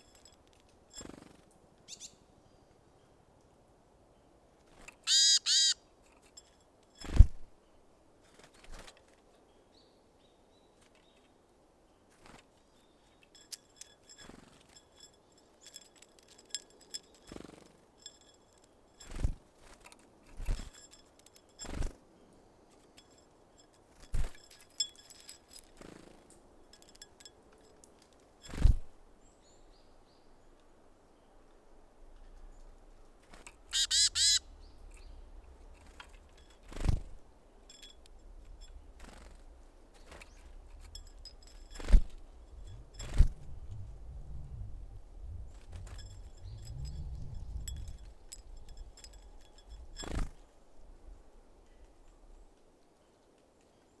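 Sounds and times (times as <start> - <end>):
faint high bird chirps: 1.9 - 3.1, 5.1 - 5.8, 33.7 - 35.5, 39.9 - 50.2
harsh bird call: 5.1 - 5.8, 33.7 - 34.5.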